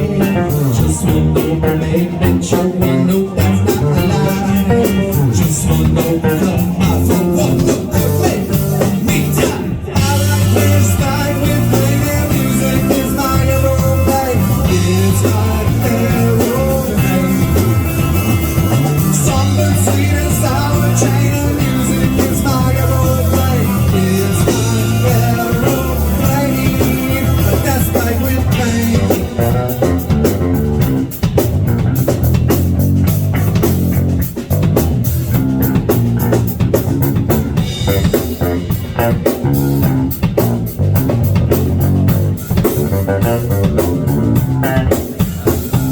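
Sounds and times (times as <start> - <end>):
rock music with guitar and drums: 0.0 - 45.9.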